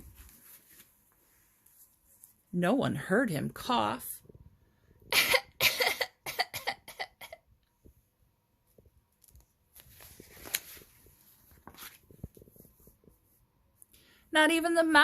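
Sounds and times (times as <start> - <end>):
soft rustle: 0.0 - 2.5, 7.8 - 13.9
woman coughing: 5.1 - 7.4.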